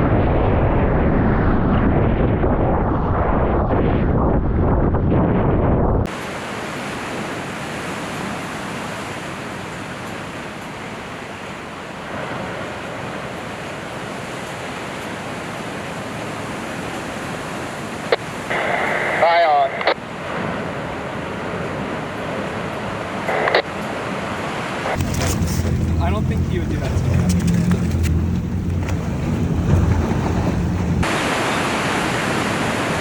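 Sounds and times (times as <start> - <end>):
wind: 0.0 - 33.0
ocean surf: 6.1 - 33.0
loud low rumble: 25.0 - 31.0.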